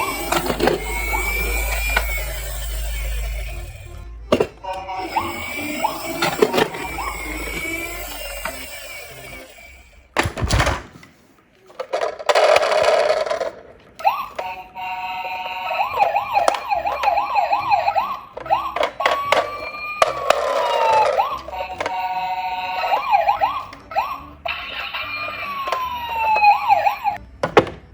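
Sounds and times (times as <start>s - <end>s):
electronic toy sirens: 0.0s - 10.1s, 14.0s - 27.2s.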